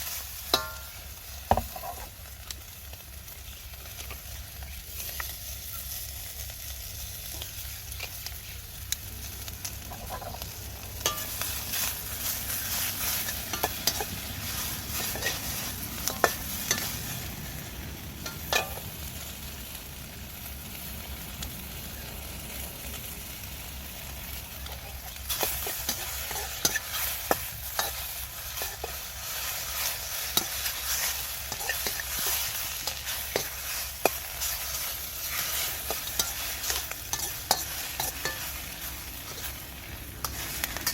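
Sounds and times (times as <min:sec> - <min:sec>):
food sizzling in a wok: 0:00.0 - 0:40.9
utensil clicking against wok: 0:13.1 - 0:17.0, 0:24.6 - 0:40.9.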